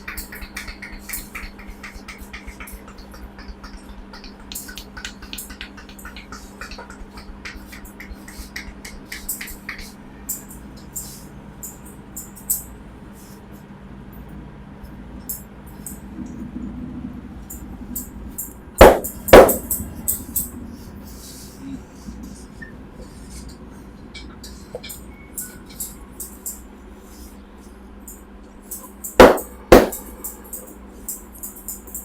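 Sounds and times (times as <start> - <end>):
hands rubbing and tapping hair: 0.0 - 9.9.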